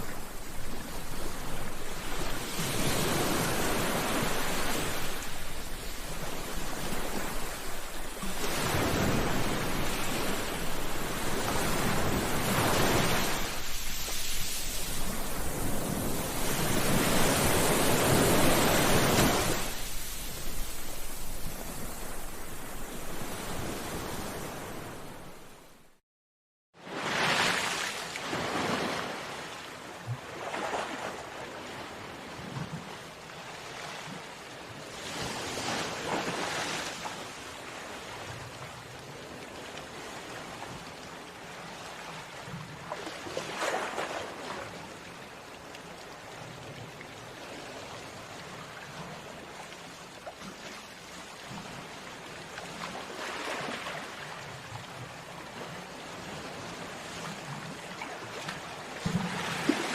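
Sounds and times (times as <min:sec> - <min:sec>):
ocean waves breaking on shore: 0:00.0 - 0:26.0, 0:26.8 - 0:59.9.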